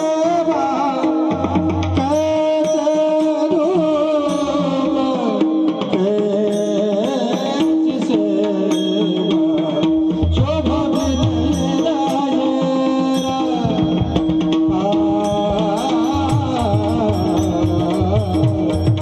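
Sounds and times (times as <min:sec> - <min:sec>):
devotional singing: 0:00.0 - 0:19.0
mridang drum strokes: 0:00.0 - 0:19.0.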